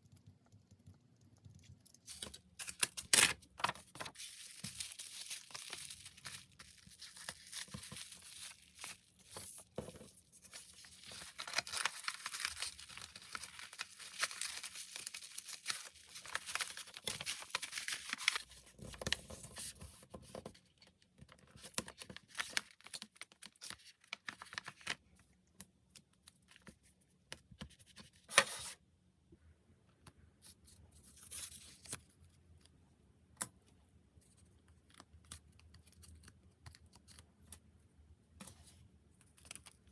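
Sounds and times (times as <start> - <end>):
packing wrap crinkling and tearing: 2.1 - 9.7, 10.3 - 18.8.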